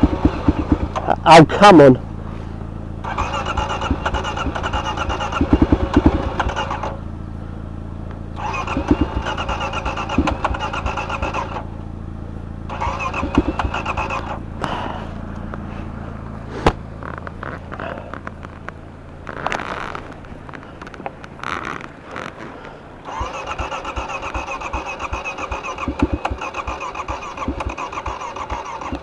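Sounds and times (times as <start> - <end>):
starter motor cranking engine: 0.0 - 7.2, 8.3 - 11.9, 12.6 - 29.0
steady low hum: 0.0 - 29.0.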